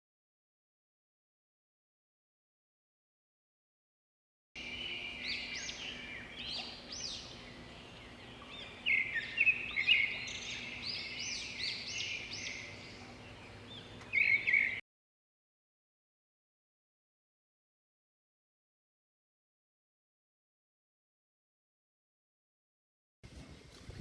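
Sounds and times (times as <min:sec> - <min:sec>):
small birds chirping: 0:04.6 - 0:14.8.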